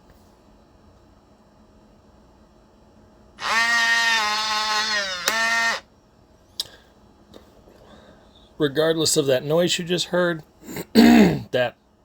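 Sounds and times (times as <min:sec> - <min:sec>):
lock motor whine: 0:03.4 - 0:05.8.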